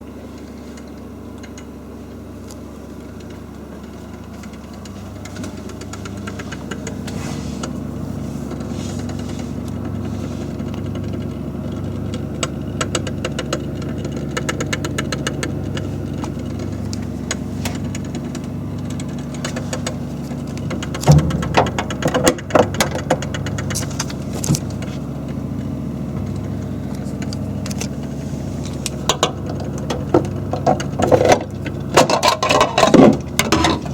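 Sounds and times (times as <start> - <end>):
refrigerator humming: 0.0 - 33.9
refrigerator clicks and knocks: 20.6 - 24.9.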